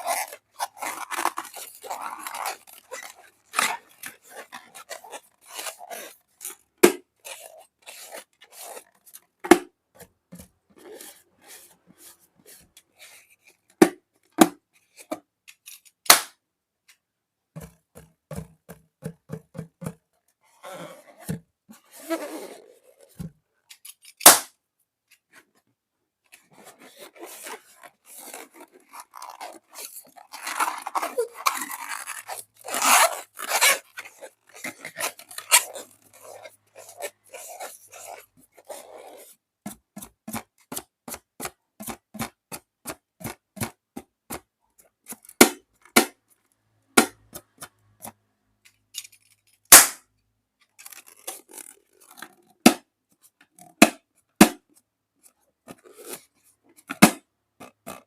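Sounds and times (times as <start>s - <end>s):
crackly rustling of slime: 0.0s - 9.4s, 26.3s - 39.4s, 50.6s - 52.6s
balloon pops: 16.0s - 16.4s, 24.2s - 24.5s, 49.7s - 50.0s.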